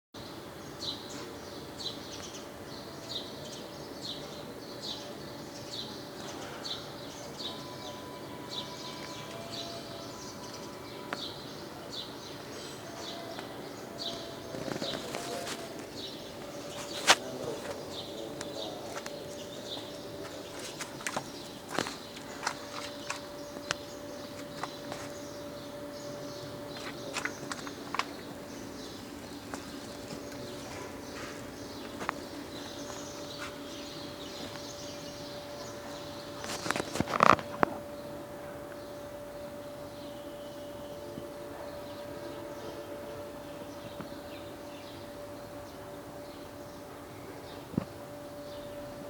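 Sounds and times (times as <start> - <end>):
faint steady hum: 0.2 - 49.0
bird chirping: 0.3 - 38.2.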